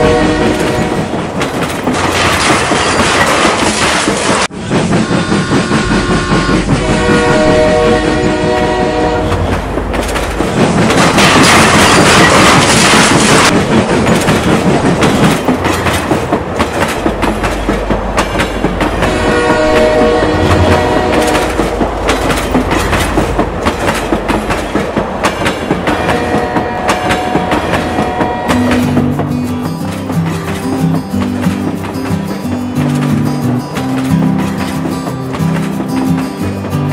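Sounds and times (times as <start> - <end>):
steam locomotive whistle: 0.0 - 1.1, 5.0 - 9.5, 19.0 - 21.6, 26.0 - 29.0
train clicking rhythm: 0.0 - 36.9
background music with plucked strings: 28.5 - 36.9.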